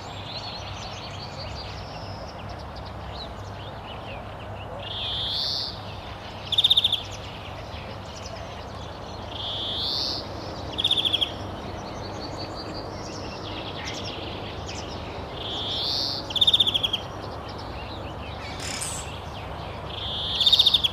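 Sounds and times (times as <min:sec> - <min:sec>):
faint bird chirps: 0:18.4 - 0:19.3.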